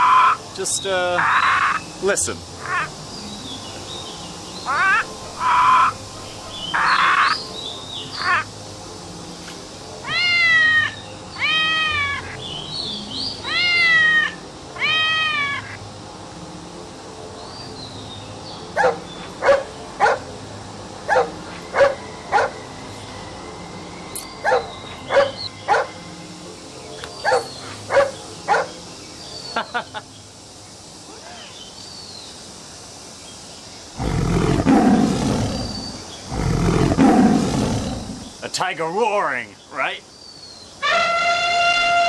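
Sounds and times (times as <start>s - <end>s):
crow cawing: 0.0s - 0.4s, 1.2s - 1.9s, 2.6s - 3.0s, 4.7s - 6.0s, 6.7s - 7.4s
cat meowing: 10.0s - 12.4s, 13.4s - 15.8s
dog barking: 18.8s - 20.2s, 21.1s - 22.5s, 24.4s - 25.9s, 27.2s - 28.8s.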